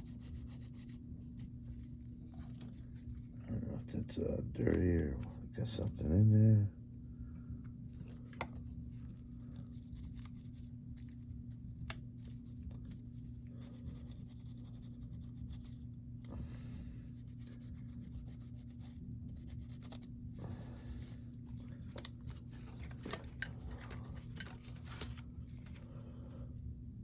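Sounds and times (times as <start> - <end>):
small tool rubbing and scratching: 0.0 - 3.4, 9.0 - 25.8
low electrical hum: 0.0 - 27.0.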